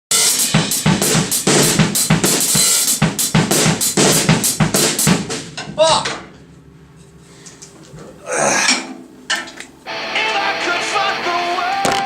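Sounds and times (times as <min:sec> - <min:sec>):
drum kit beat: 0:00.1 - 0:05.6, 0:09.8 - 0:12.0
cymbals washing: 0:00.2 - 0:05.1, 0:07.2 - 0:12.0.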